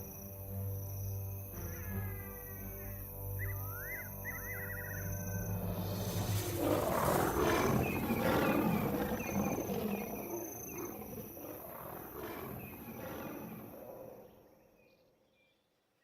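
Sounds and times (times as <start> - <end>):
lions roaring and growling: 5.7 - 14.2.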